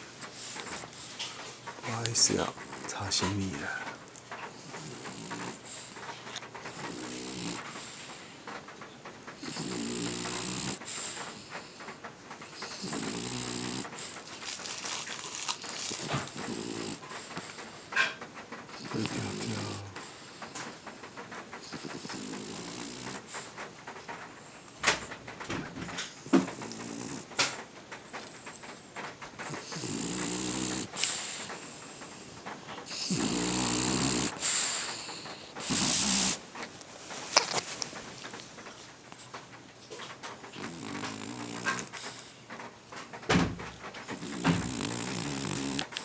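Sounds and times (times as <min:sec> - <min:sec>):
dog snoring: 0:00.0 - 0:08.5, 0:09.4 - 0:36.4, 0:39.9 - 0:42.5, 0:43.9 - 0:46.0
breathy hissing breath: 0:03.6 - 0:08.6, 0:09.4 - 0:18.2, 0:18.8 - 0:20.9, 0:29.4 - 0:36.4.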